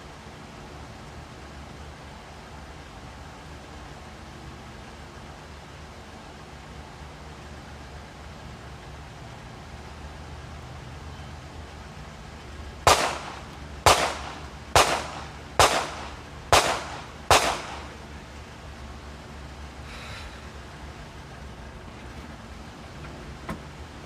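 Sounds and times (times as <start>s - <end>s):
gunshots with echo: 12.9s - 18.0s.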